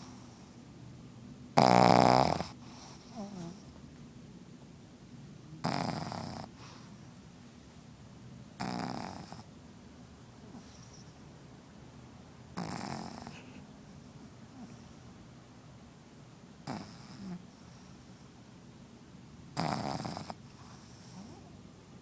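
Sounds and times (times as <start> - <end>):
puppy snoring: 1.6 - 3.8, 5.6 - 7.1, 8.6 - 9.5, 10.5 - 11.2, 12.6 - 13.6, 14.5 - 15.0, 16.6 - 18.4, 19.5 - 21.6.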